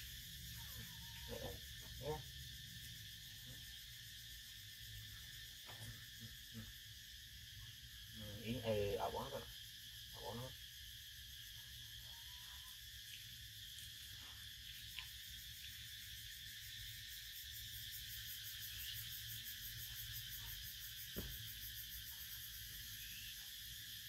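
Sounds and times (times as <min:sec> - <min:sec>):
high-pitched insect chorus: 0:00.0 - 0:24.0.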